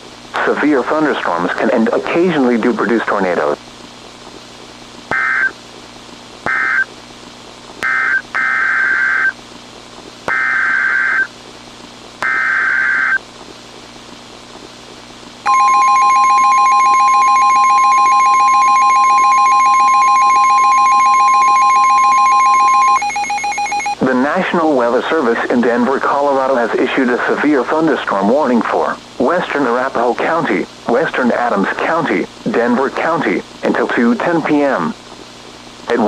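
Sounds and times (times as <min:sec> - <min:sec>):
screeching data bursts: 0:05.1 - 0:05.6, 0:06.5 - 0:06.9, 0:07.8 - 0:09.4, 0:10.3 - 0:11.3, 0:12.2 - 0:13.2, 0:15.5 - 0:24.0
steady alert tone: 0:15.5 - 0:24.0.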